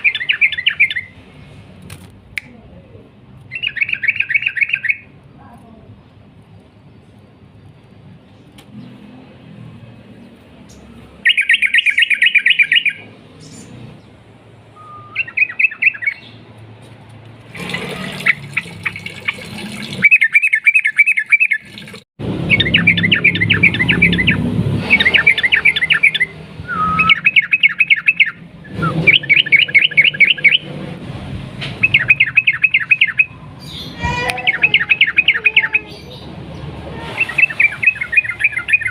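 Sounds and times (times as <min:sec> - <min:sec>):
bird singing fast chattering notes: 0:00.0 - 0:01.2, 0:03.5 - 0:05.1, 0:10.7 - 0:14.2, 0:14.8 - 0:16.4, 0:17.9 - 0:21.8, 0:22.5 - 0:30.7, 0:31.8 - 0:38.9.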